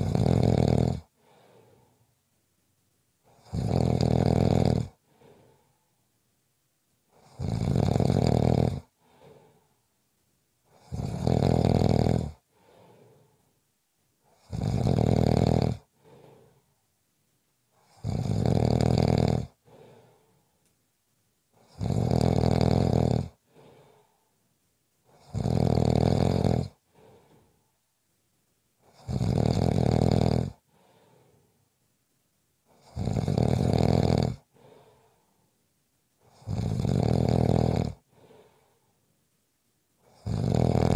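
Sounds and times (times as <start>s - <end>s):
person snoring: 0.0s - 2.0s, 3.3s - 5.7s, 7.2s - 9.7s, 10.7s - 13.4s, 14.3s - 16.6s, 17.8s - 20.4s, 21.6s - 24.2s, 25.1s - 27.5s, 28.8s - 31.5s, 32.7s - 35.2s, 36.3s - 38.8s, 40.0s - 40.9s
faint breath: 1.0s - 2.2s, 5.0s - 6.2s, 8.9s - 10.0s, 12.4s - 13.6s, 15.8s - 16.9s, 19.5s - 20.8s, 23.3s - 24.5s, 26.7s - 27.9s, 30.6s - 31.7s, 34.4s - 35.6s, 38.0s - 39.2s.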